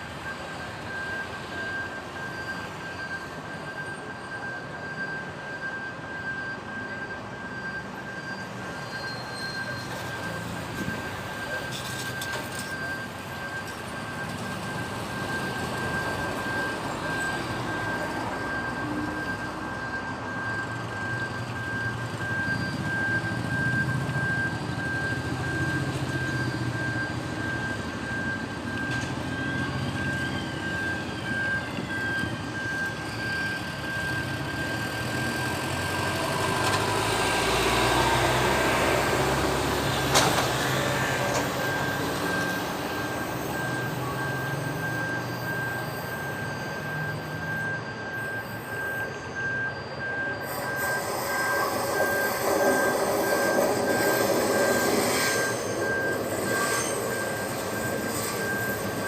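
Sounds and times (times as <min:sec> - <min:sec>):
traffic rumble: 0:00.0 - 0:59.0
thin high tone: 0:32.3 - 0:59.0.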